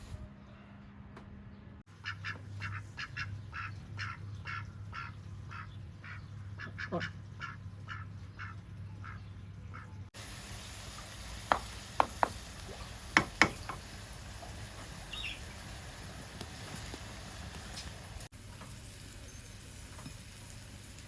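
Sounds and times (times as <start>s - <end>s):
duck-like fowl calls: 2.0s - 9.8s
cooking sizzle over fire: 10.2s - 21.0s
fire pops and crackles: 16.0s - 18.3s.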